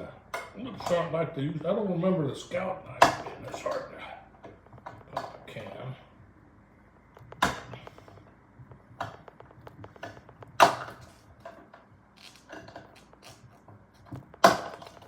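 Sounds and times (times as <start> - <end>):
can opener clicking and scraping: 9.0 - 15.0
blade crunching through tin: 12.2 - 13.6, 14.3 - 15.0.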